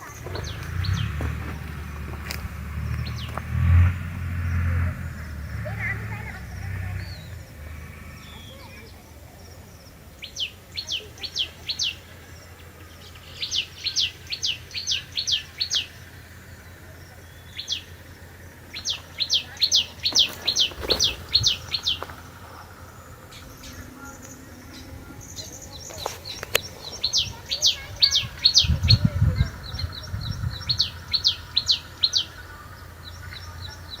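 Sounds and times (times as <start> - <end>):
weaver birds chirping: 0.0 - 34.0
low rumble: 0.1 - 10.3, 12.0 - 34.0.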